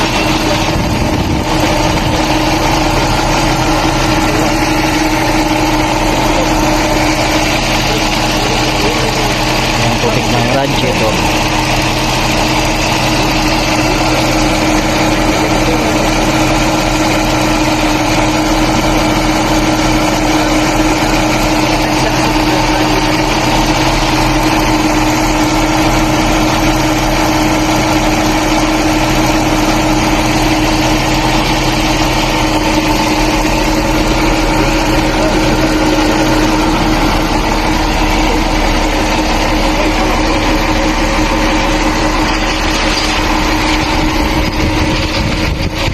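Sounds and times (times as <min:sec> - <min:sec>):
engine idling: 0:00.0 - 0:45.9.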